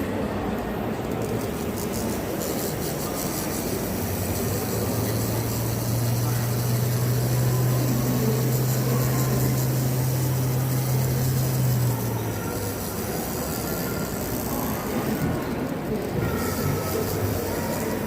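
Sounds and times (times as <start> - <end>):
electric machine hum: 0.9 - 18.0.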